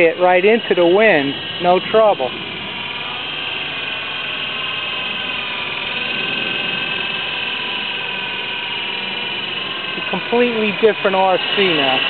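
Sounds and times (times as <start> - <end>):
toy helicopter rotors whining: 0.0 - 12.0.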